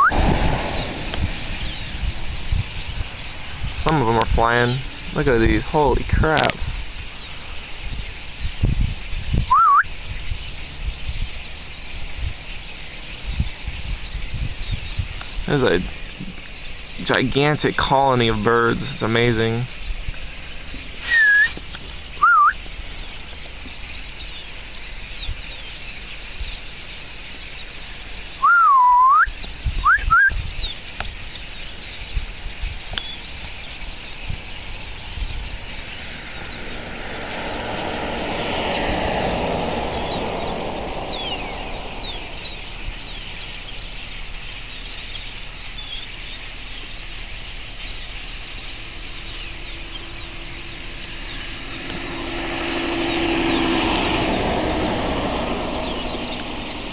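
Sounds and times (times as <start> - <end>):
loud swooping whistles: 0.0 - 5.5, 9.4 - 10.3, 20.8 - 22.8, 28.3 - 30.8, 32.9 - 56.9
broad rush of noise: 0.0 - 8.1, 33.4 - 44.9, 47.0 - 56.9
flock of birds chattering: 0.0 - 56.9.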